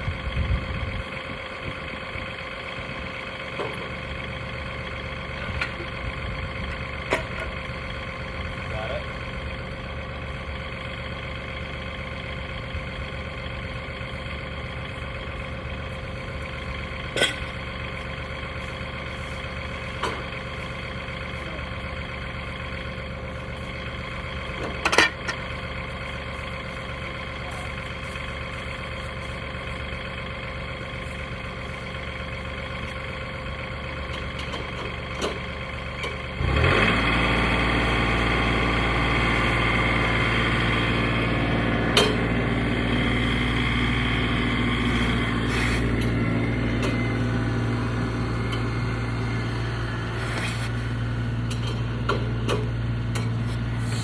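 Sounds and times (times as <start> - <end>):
gasoline engine idling: 0.0 - 54.0.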